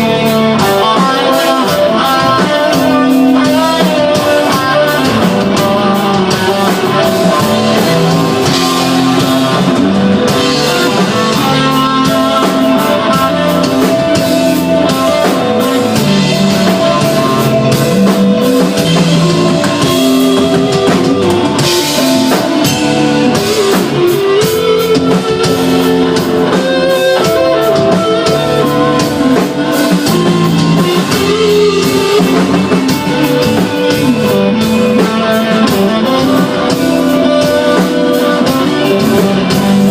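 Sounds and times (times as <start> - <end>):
rock band playing live: 0.0 - 39.9.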